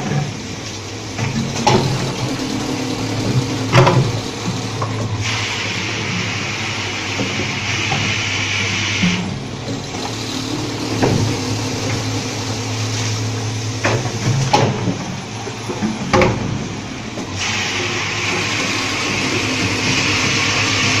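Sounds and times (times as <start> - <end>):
washing machine motor hum: 0.0 - 8.4, 9.2 - 21.0.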